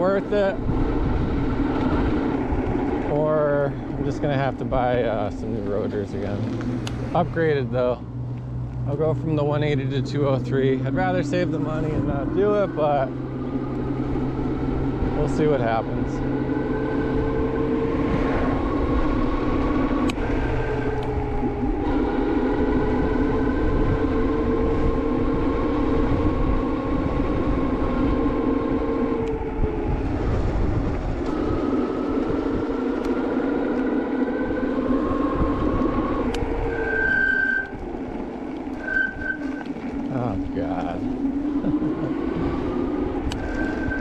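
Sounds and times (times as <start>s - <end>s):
electric motor whining: 0.0s - 44.0s
road and wind noise: 0.0s - 44.0s
disc brake squeal: 35.9s - 37.8s, 38.7s - 39.8s, 43.3s - 44.0s.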